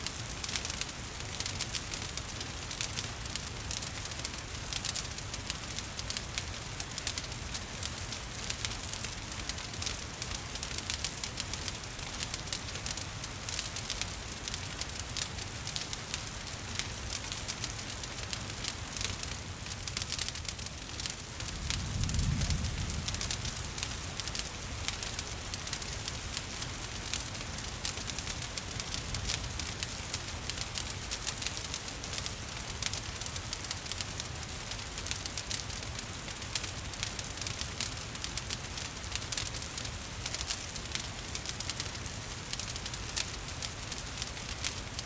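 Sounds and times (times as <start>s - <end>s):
wood fire crackling: 0.0s - 45.0s
rain hissing: 19.8s - 30.2s.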